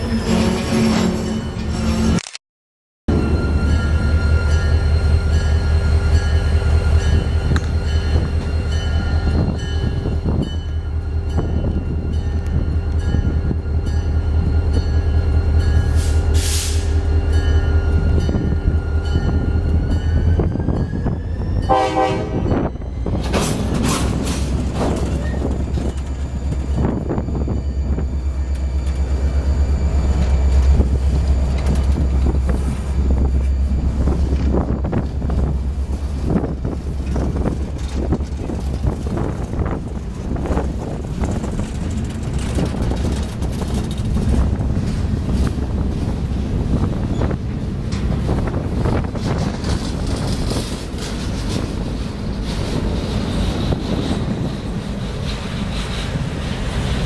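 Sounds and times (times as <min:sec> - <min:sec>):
train engine hum: 0:03.1 - 0:57.0
train horn blast: 0:21.7 - 0:22.7.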